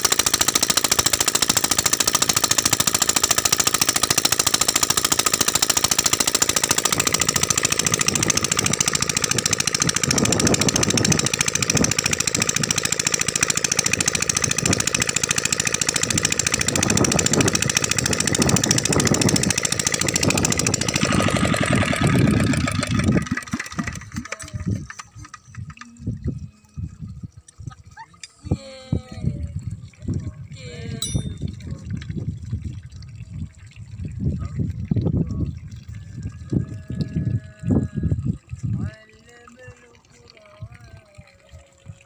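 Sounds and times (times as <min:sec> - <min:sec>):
diesel engine knocking: 0:00.0 - 0:25.8.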